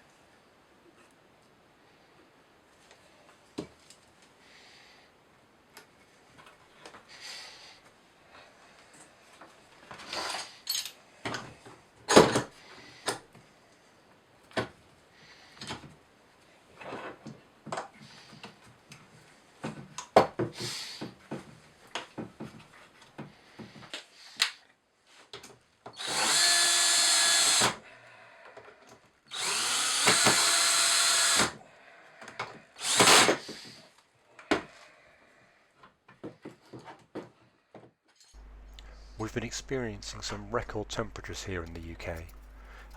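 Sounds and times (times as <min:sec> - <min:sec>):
power drill whining: 0:26.0 - 0:27.8, 0:29.3 - 0:31.6, 0:32.4 - 0:33.8.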